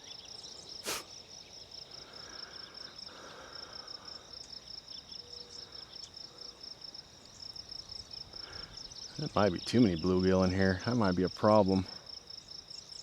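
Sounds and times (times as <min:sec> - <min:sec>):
insects chirping: 0:00.0 - 0:13.0.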